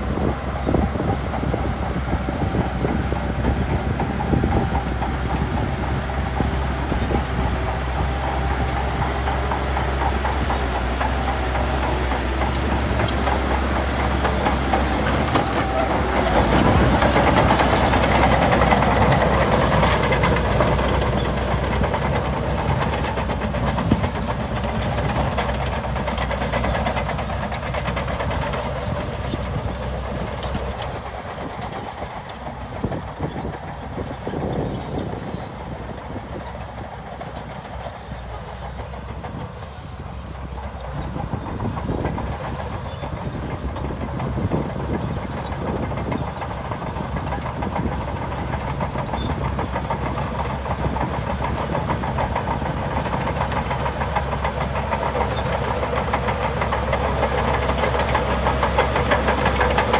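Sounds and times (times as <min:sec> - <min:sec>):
diesel engine of heavy machinery: 0:00.0 - 0:59.9.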